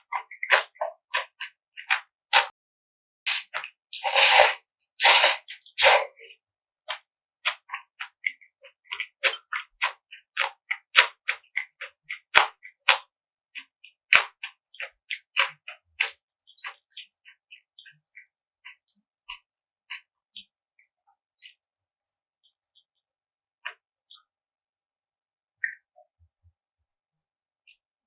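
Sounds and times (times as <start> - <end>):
soft wet chewing: 0.1 - 2.0, 6.9 - 13.0
noodle slurps: 3.3 - 6.1.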